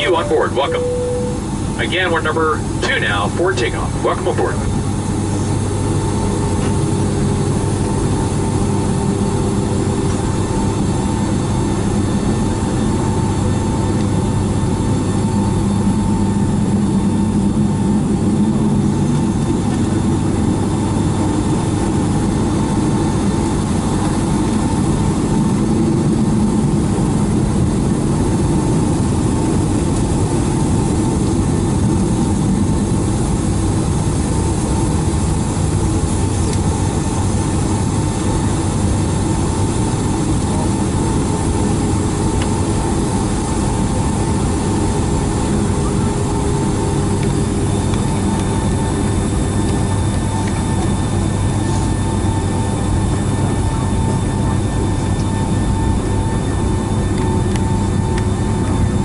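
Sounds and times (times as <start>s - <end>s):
faint steady tone: 0.0s - 1.5s
jet engines running at low power: 0.0s - 59.0s.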